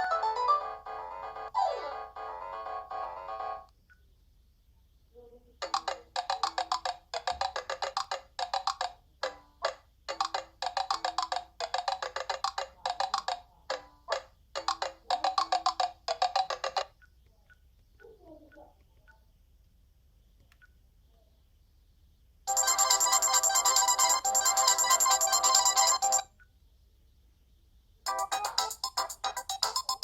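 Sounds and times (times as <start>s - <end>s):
phone synth ringtone: 0.0s - 3.6s, 22.5s - 26.3s, 28.1s - 30.0s.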